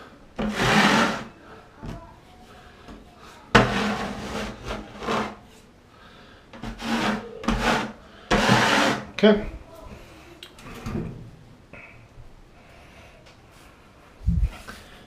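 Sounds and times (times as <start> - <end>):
drywall knife scraping compound: 0.4 - 1.4, 3.6 - 5.6, 6.6 - 9.2.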